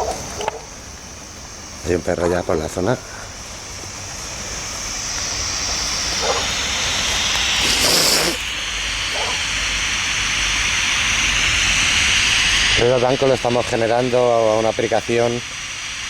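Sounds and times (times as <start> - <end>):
white noise hiss: 0.0 - 16.0
brief loud burst: 7.5 - 8.6.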